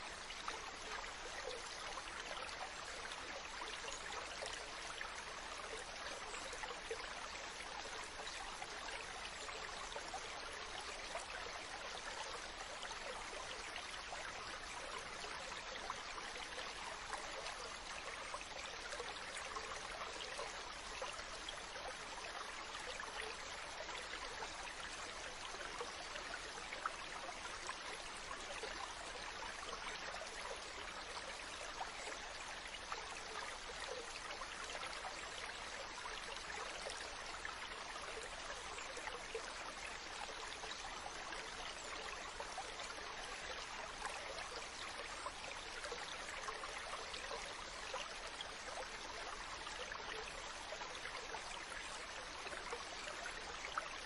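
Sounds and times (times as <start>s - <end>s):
stream water splashing over rocks: 0.0s - 54.0s.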